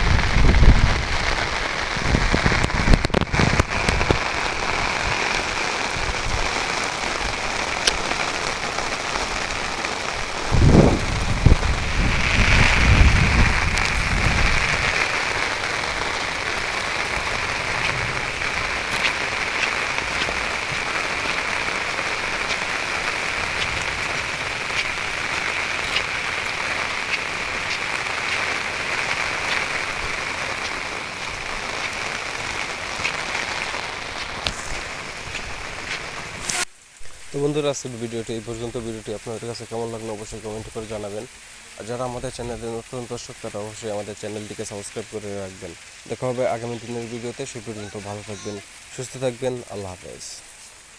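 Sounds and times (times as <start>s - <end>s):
heavy rain falling: 0.0s - 50.9s
low rumble: 16.6s - 20.1s.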